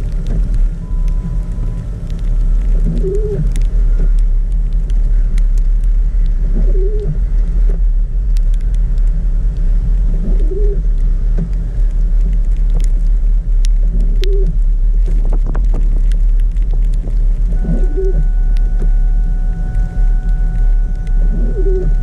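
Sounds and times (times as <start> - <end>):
car engine and road rumble: 0.0 - 22.0
warbling squeak: 2.8 - 3.5, 17.5 - 22.0.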